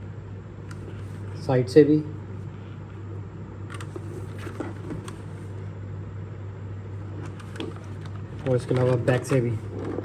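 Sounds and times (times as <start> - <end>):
low background hum: 0.0 - 10.0
keyboard being handled clicks: 3.7 - 4.0.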